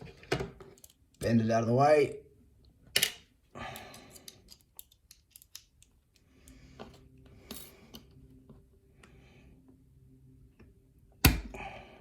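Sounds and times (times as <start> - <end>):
metal tool prying clip: 4.5 - 5.9.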